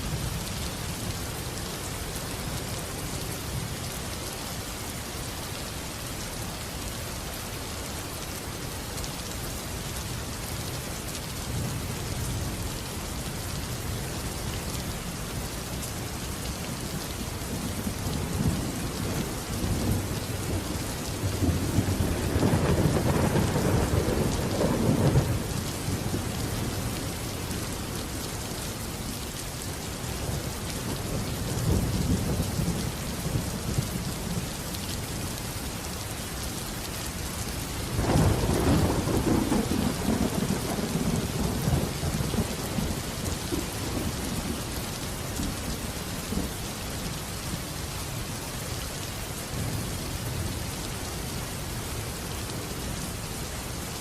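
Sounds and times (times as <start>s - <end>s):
steady rain: 0.0s - 54.0s
rolling thunder: 18.2s - 26.1s.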